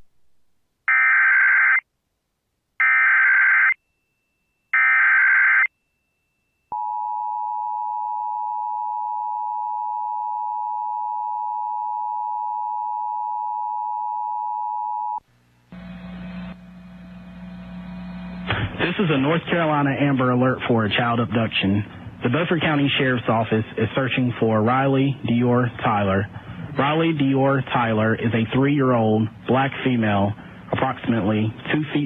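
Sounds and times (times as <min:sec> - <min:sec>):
low hum: 0:15.2 - 0:31.8.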